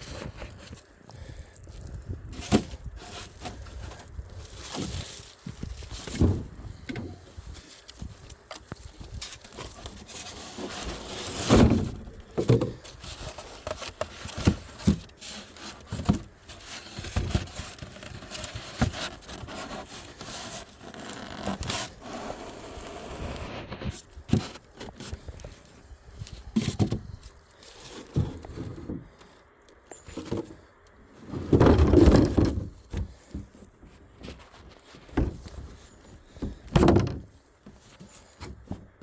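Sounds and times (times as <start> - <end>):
wood knocking and scraping: 2.3 - 22.5, 23.3 - 39.0.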